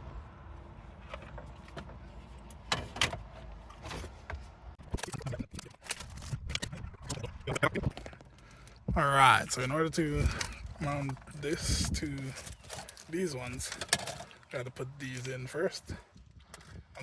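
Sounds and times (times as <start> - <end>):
plastic parts clicking and rattling: 4.8 - 8.8, 10.2 - 14.5.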